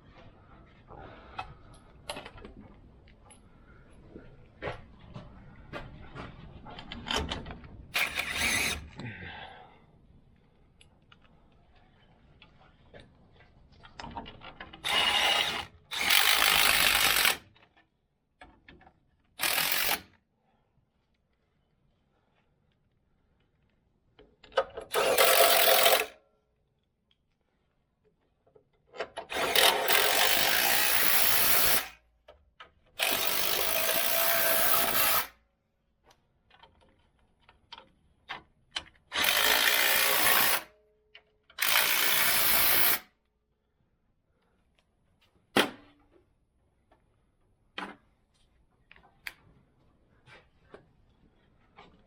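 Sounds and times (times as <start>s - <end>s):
power tool running: 8.0s - 8.9s, 14.9s - 17.4s, 25.0s - 26.1s, 29.3s - 31.9s, 33.0s - 35.3s, 39.2s - 40.6s, 41.6s - 43.0s.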